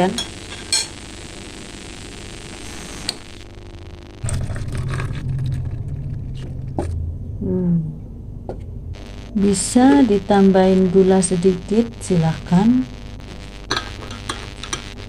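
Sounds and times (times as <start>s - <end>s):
low rumble: 4.2s - 11.7s
gas stove hissing: 13.7s - 15.0s.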